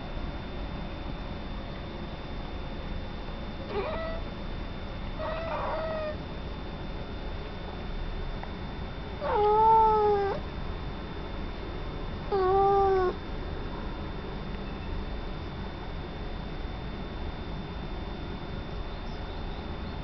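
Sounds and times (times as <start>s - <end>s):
cat meowing: 3.7s - 4.3s, 5.2s - 6.2s, 9.2s - 10.4s, 12.3s - 13.2s.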